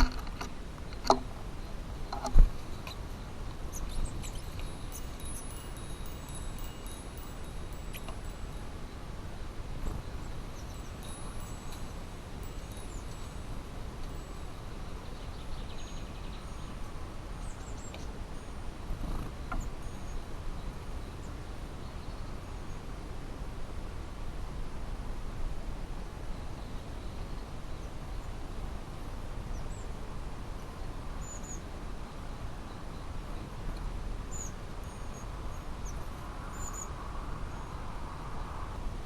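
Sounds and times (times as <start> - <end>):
wind chime ringing: 4.2 - 8.9, 10.6 - 14.7.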